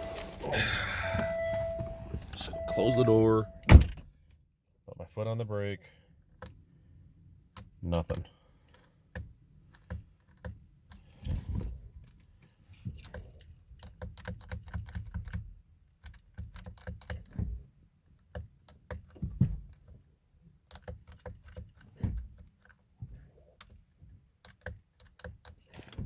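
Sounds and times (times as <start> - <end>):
light clicks and taps in car: 7.5 - 11.0, 12.1 - 20.0.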